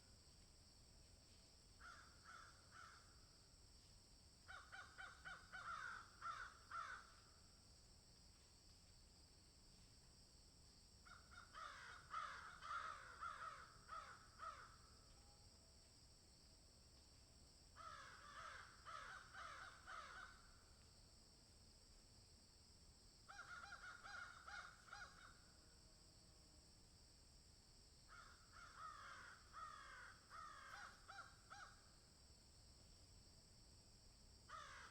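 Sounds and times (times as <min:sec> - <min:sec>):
crows cawing: 0:01.8 - 0:03.1, 0:04.5 - 0:07.2, 0:11.1 - 0:14.8, 0:17.8 - 0:20.5, 0:23.3 - 0:25.4, 0:28.1 - 0:31.8, 0:34.5 - 0:34.9.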